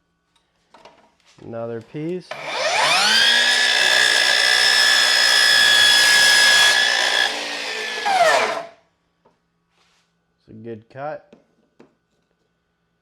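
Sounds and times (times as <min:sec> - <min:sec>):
miter saw whining: 0:02.3 - 0:08.8.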